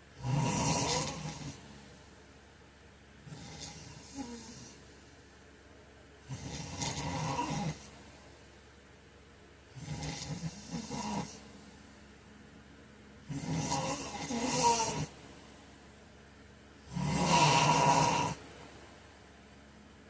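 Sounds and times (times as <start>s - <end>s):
man snoring: 0.2s - 1.6s, 3.2s - 4.8s, 6.3s - 8.0s, 9.7s - 11.5s, 13.2s - 15.1s, 16.9s - 18.4s
quiet breathing: 9.7s - 12.3s.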